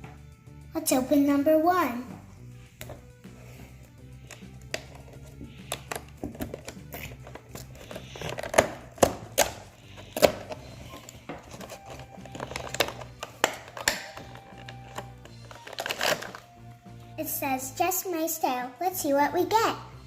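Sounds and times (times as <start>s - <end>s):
wrapper crinkling and tearing: 4.3s - 16.5s.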